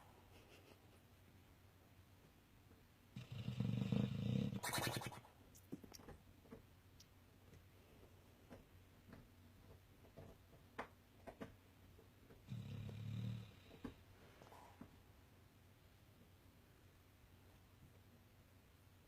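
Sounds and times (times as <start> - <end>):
dog snoring: 3.2 - 4.9, 12.4 - 14.0
faint small clicks: 6.9 - 7.7.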